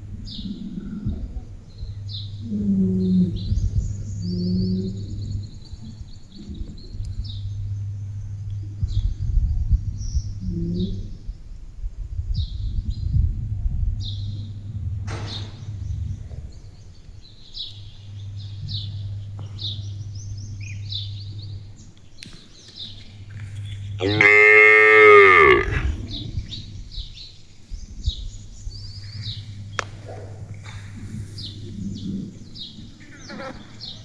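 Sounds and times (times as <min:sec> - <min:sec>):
small birds chirping: 0:00.0 - 0:11.6, 0:13.9 - 0:34.0
steady low hum: 0:00.0 - 0:34.0
cow mooing: 0:23.9 - 0:26.4.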